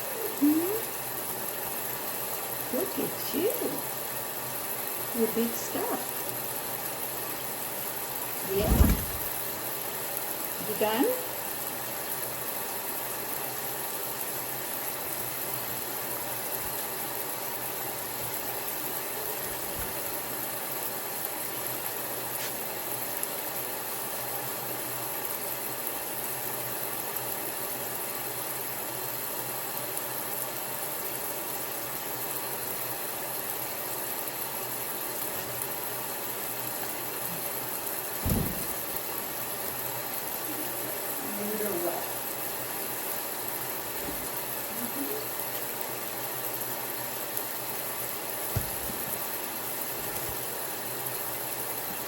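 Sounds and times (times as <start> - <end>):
running water hiss: 0.0 - 23.9, 32.4 - 52.0
low thump: 8.5 - 9.4, 38.2 - 38.9, 48.6 - 49.0.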